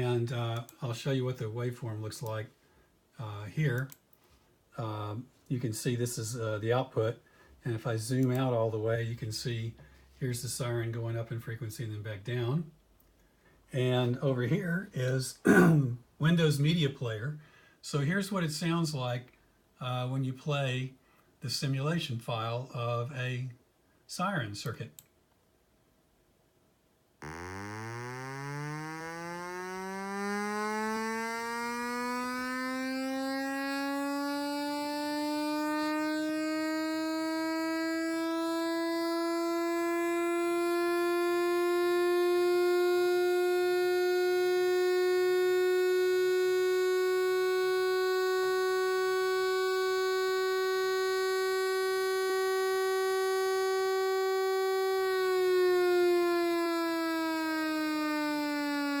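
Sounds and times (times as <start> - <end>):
electronic siren wail: 0.0 - 0.4, 27.2 - 59.0.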